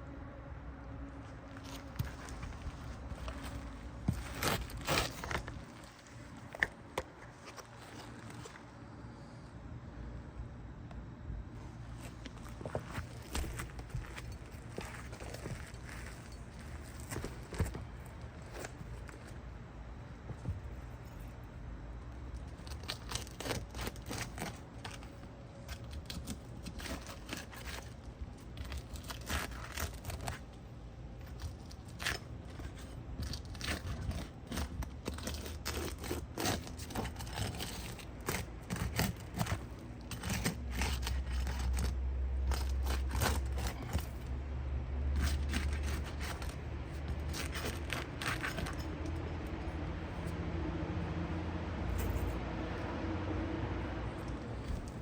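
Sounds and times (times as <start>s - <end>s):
low steady rumble: 0.0s - 55.0s
roof tool scraping under shingles: 1.5s - 8.8s, 11.9s - 19.6s, 22.4s - 44.3s, 45.1s - 50.5s.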